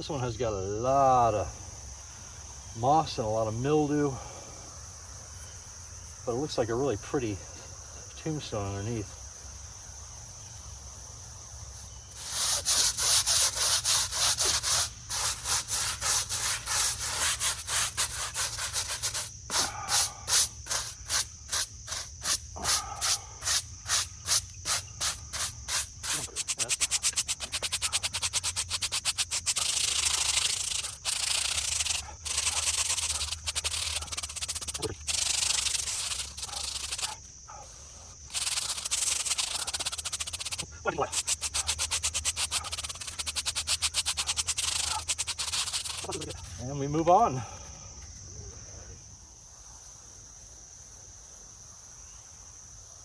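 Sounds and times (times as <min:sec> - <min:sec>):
insects trilling: 0:00.0 - 0:53.0
brush scrubbing stone: 0:12.2 - 0:46.8.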